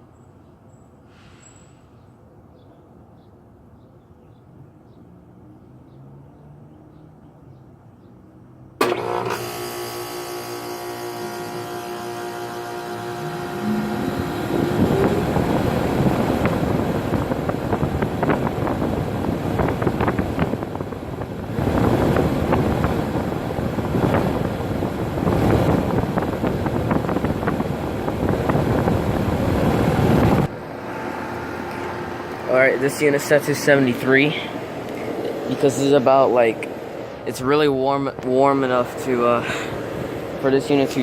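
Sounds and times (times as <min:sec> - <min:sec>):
air conditioner unit humming: 0:08.8 - 0:41.0
condenser fan and compressor running: 0:08.8 - 0:41.0.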